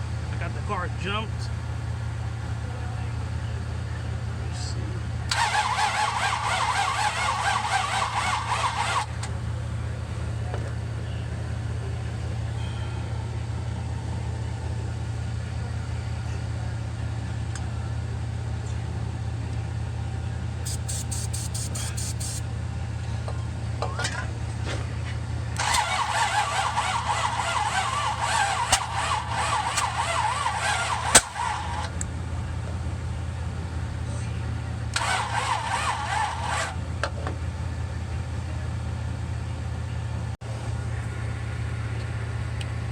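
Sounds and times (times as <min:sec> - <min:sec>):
engine starter cranking: 0:05.3 - 0:09.4, 0:25.6 - 0:32.0, 0:34.9 - 0:37.2
carburettor backfire pop: 0:31.1 - 0:31.4.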